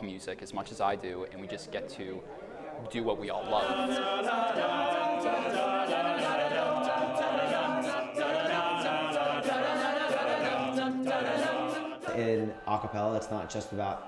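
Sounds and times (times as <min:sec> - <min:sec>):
men singing a cappella: 0:03.2 - 0:14.0.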